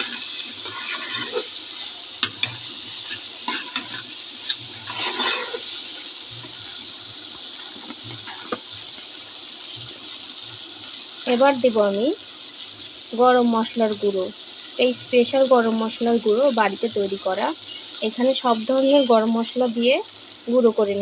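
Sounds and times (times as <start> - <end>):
spatula scraping a pan: 0.0 - 8.9
chickpeas sizzling in a pan: 0.0 - 21.0.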